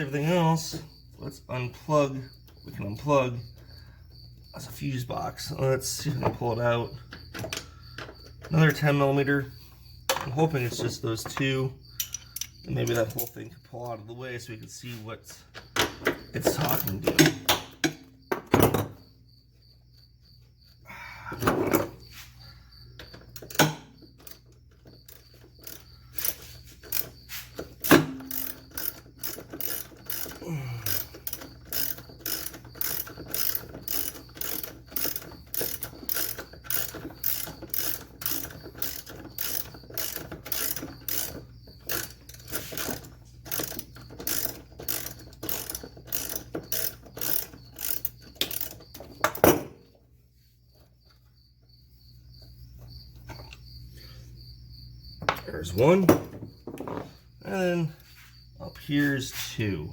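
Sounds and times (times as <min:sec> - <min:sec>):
ratchet wrench clicking: 0:12.0 - 0:12.6, 0:25.1 - 0:49.2.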